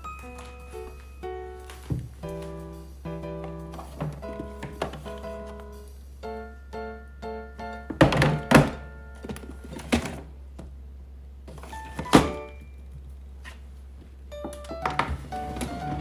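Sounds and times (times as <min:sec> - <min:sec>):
light background music: 0:00.0 - 0:09.7, 0:14.3 - 0:16.0
objects knocking and thunking: 0:01.7 - 0:02.3, 0:03.4 - 0:05.6, 0:07.9 - 0:10.7, 0:14.4 - 0:16.0.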